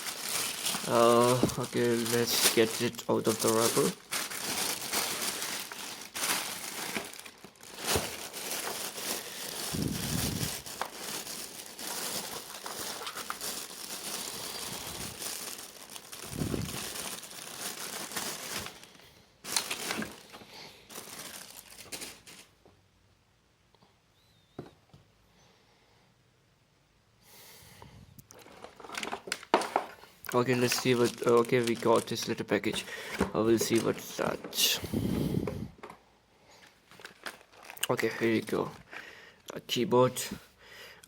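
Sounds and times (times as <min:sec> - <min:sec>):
plastic wrapping crinkling: 0:00.0 - 0:22.6, 0:28.3 - 0:35.9, 0:36.6 - 0:39.0.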